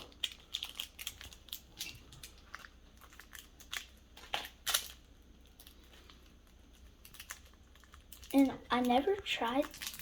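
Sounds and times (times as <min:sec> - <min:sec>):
wrapper crinkling: 0:00.0 - 0:10.0.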